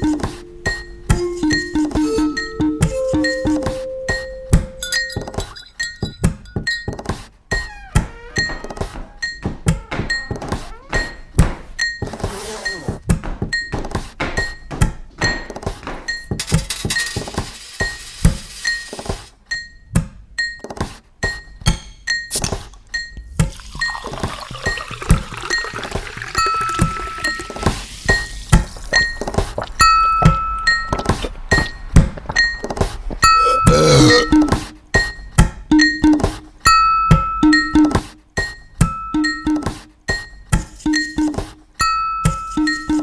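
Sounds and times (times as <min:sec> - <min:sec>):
cups and glassware clinking beat: 0:00.0 - 0:07.3, 0:19.9 - 0:43.0.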